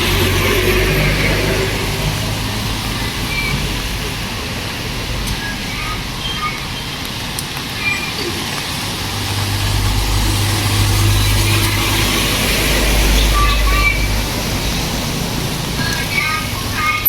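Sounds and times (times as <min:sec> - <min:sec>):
vehicle engine droning past: 0:00.0 - 0:02.8, 0:09.1 - 0:15.8
rain: 0:00.0 - 0:17.0
street noise: 0:00.0 - 0:17.0.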